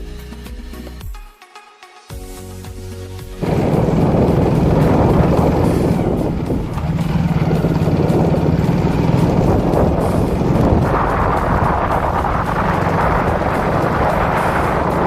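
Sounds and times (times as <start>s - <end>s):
road and wind noise: 3.4s - 15.0s
vehicle engine hum: 3.4s - 15.0s.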